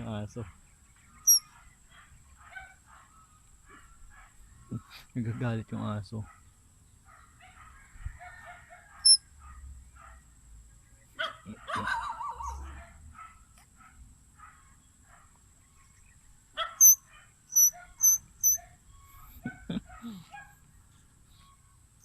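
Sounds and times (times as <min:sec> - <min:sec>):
faint chirping: 0:00.2 - 0:04.9, 0:09.0 - 0:09.2, 0:14.4 - 0:22.0
sharp high chirps: 0:01.2 - 0:01.4, 0:16.8 - 0:18.6
dog barking: 0:01.3 - 0:04.4, 0:06.2 - 0:06.5, 0:07.1 - 0:10.2, 0:11.2 - 0:15.4, 0:16.6 - 0:18.8, 0:19.4 - 0:20.6.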